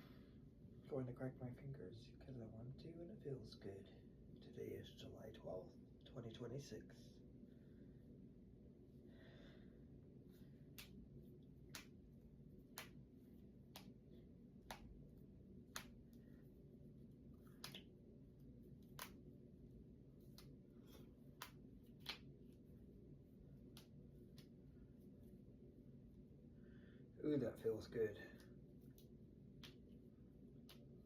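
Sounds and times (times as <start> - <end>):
knuckles cracking: 10.6 - 14.0, 14.6 - 15.1, 15.7 - 16.3, 17.3 - 18.0, 18.8 - 19.4, 20.2 - 22.6, 28.4 - 30.0, 30.6 - 31.0.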